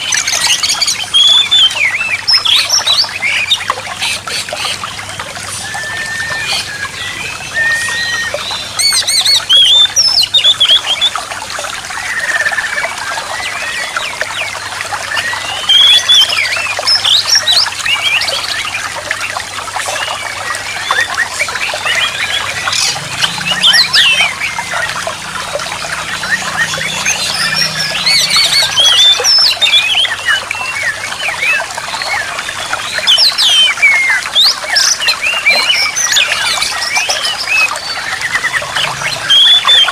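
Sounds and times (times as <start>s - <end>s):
trickle of running water: 0.0s - 39.9s
songbird whistles and chirps: 5.5s - 11.2s.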